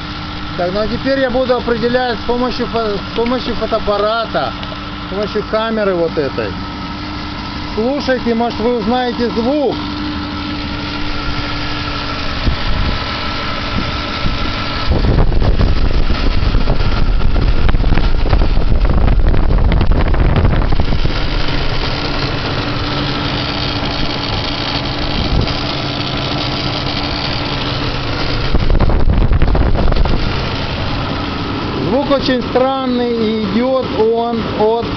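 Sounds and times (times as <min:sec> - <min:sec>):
engine knocking: 0:00.0 - 0:34.9
engine running: 0:00.0 - 0:34.9.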